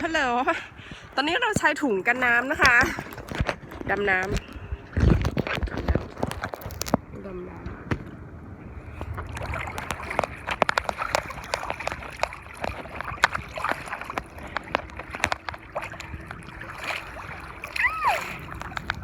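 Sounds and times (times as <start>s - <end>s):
muffled water splashing: 0.0s - 19.0s
sharp clicks and crackles: 3.1s - 7.0s, 9.8s - 16.4s, 18.5s - 19.0s.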